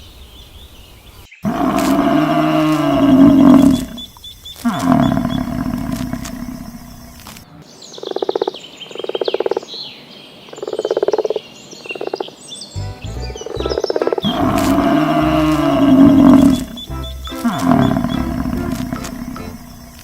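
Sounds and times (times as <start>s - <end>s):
cow mooing: 1.5s - 4.0s, 14.2s - 20.0s
clicking pulse calls: 1.5s - 7.4s, 12.9s - 20.0s
high bird chirps: 12.6s - 20.0s.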